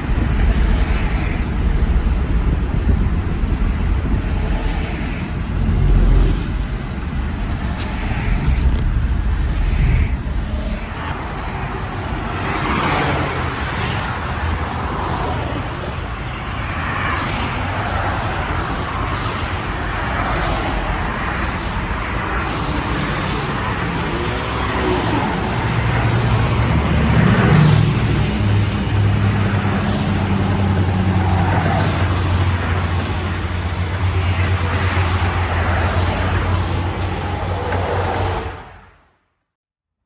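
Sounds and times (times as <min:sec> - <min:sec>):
low engine drone: 0:00.0 - 0:12.5
low rumble of road traffic: 0:00.0 - 0:39.0.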